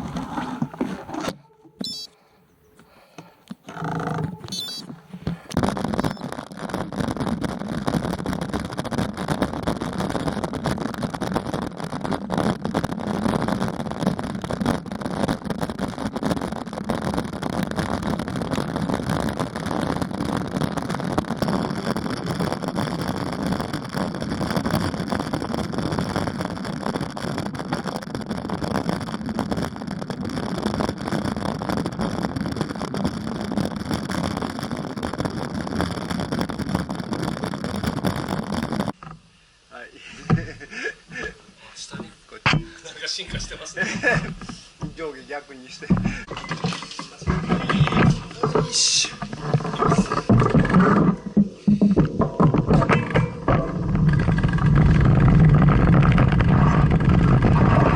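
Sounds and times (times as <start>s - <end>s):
tyre and road noise: 0.0s - 2.0s, 45.9s - 57.9s
wind rumble on microphone: 4.0s - 39.0s, 45.9s - 57.9s
steady high hiss: 39.2s - 50.4s.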